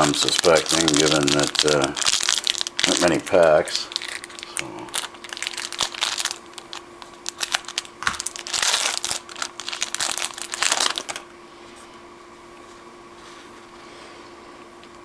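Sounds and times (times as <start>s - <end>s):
foil wrapper tearing and crinkling: 0.0s - 11.2s.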